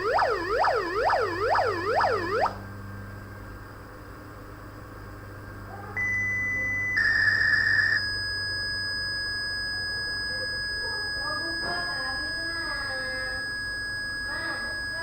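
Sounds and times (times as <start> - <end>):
electronic siren tones: 0.0 - 2.8, 6.0 - 15.0.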